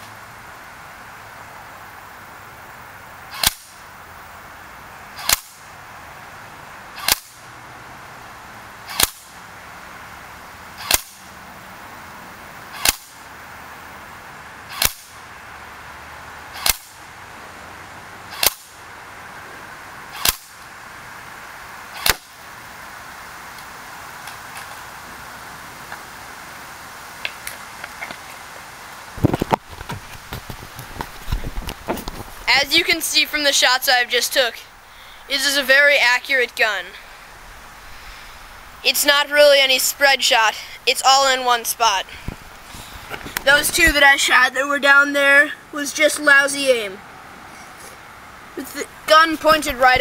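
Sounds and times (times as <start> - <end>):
airsoft rifle shots: 3.3 - 3.8, 5.2 - 5.6, 7.0 - 7.4, 8.9 - 9.3, 10.8 - 11.2, 12.7 - 13.2, 14.7 - 15.2, 16.5 - 17.0, 18.3 - 18.7, 20.1 - 20.6, 21.9 - 22.4.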